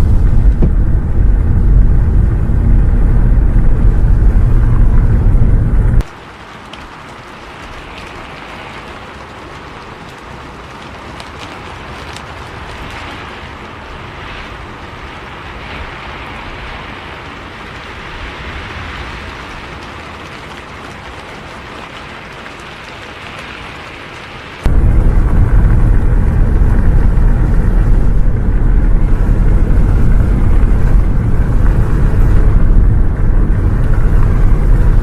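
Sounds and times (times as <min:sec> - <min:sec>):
bus rumbling on road: 0:00.0 - 0:06.1, 0:24.6 - 0:35.0
rain falling on a bus: 0:00.0 - 0:35.0.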